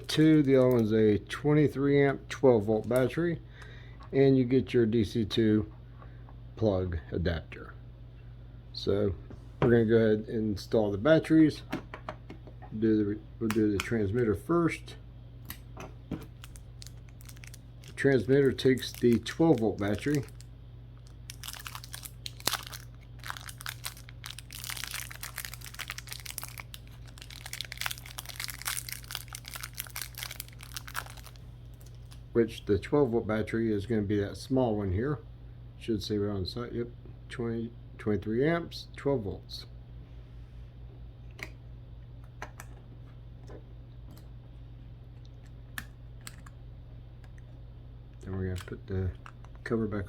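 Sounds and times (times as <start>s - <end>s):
plastic packaging crinkling: 0.0s - 0.9s, 16.3s - 32.2s
steady low hum: 0.0s - 50.0s.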